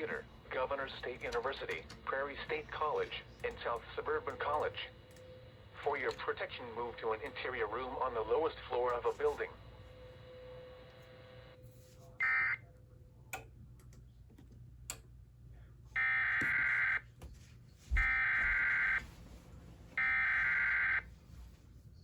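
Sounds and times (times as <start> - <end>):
emergency alert data tones: 12.2 - 12.6, 16.0 - 17.0, 17.9 - 19.1, 20.0 - 21.1.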